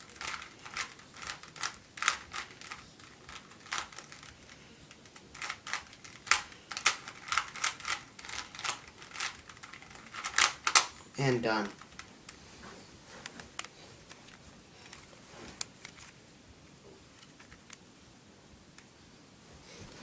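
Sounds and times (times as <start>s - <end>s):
plastic puzzle cube clicking: 0.0s - 11.0s.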